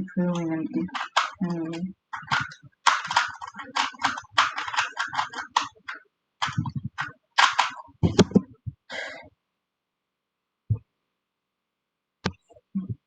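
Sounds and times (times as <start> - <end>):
plastic parts clattering: 0.8 - 8.4.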